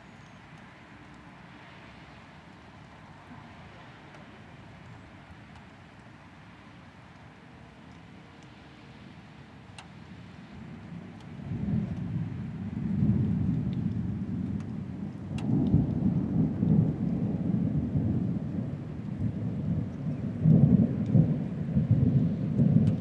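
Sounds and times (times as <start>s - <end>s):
rain falling: 0.0s - 23.0s
thunder rumbling: 9.4s - 23.0s.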